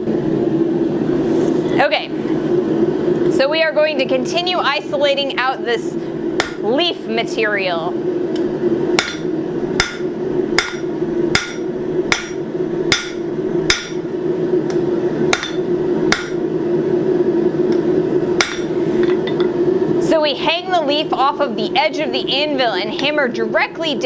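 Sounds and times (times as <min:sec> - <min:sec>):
steady hum: 0:00.0 - 0:24.0
hammer striking steel on anvil: 0:06.4 - 0:06.6, 0:09.0 - 0:14.0, 0:15.3 - 0:16.4, 0:18.4 - 0:19.6.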